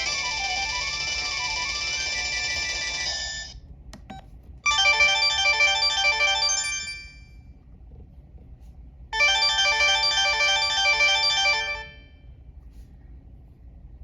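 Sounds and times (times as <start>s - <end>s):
cell phone ringtone: 0.0s - 3.6s, 4.7s - 7.4s, 9.2s - 12.2s.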